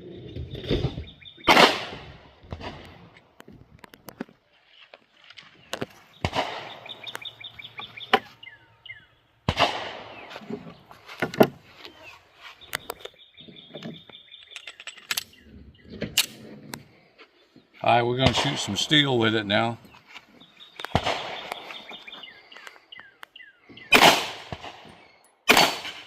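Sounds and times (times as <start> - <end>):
birds singing: 0.1 - 1.8, 4.7 - 25.4
handgun shots: 25.5 - 26.0.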